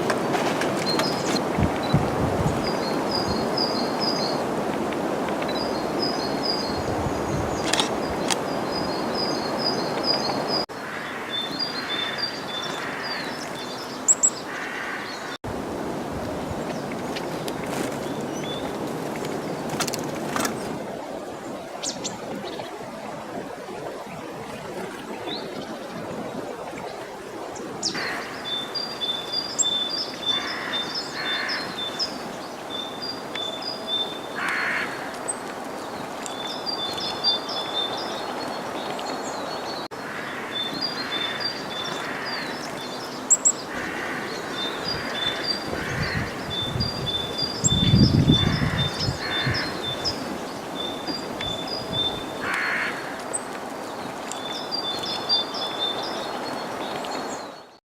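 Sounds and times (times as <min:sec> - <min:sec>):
songbirds chirping: 0:00.1 - 0:15.4, 0:25.1 - 0:57.8
crow cawing: 0:14.5 - 0:15.1, 0:30.3 - 0:31.7, 0:34.4 - 0:35.1, 0:40.0 - 0:41.4, 0:43.7 - 0:44.4, 0:52.4 - 0:53.2.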